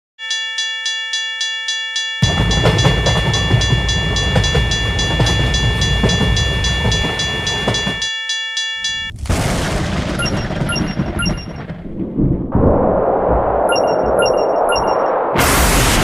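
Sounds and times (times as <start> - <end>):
railroad crossing bell ringing: 0.2 - 9.1
train rumbling and clattering: 2.2 - 8.1, 9.3 - 12.0.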